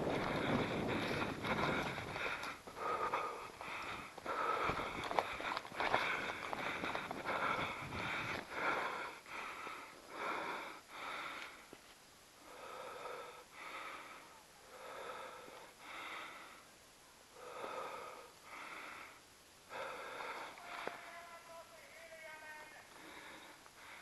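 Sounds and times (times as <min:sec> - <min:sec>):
person breathing hard: 0:00.0 - 0:11.8, 0:12.4 - 0:21.1, 0:22.9 - 0:24.0.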